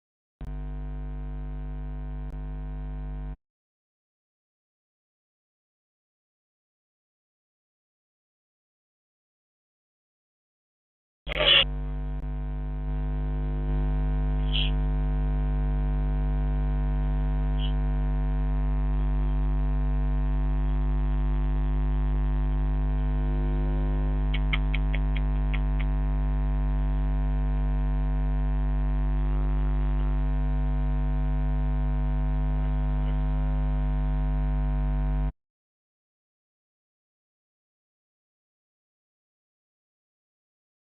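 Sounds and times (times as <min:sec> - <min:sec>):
electrical hum with deep buzz: 0:00.4 - 0:03.4, 0:11.3 - 0:35.4.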